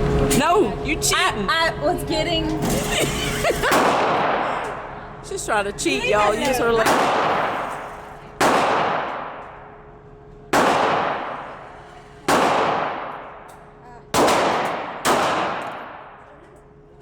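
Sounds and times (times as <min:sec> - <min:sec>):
pistol shots: 0:03.7 - 0:04.5, 0:06.8 - 0:07.6, 0:08.4 - 0:09.6, 0:10.5 - 0:11.6, 0:12.3 - 0:16.3.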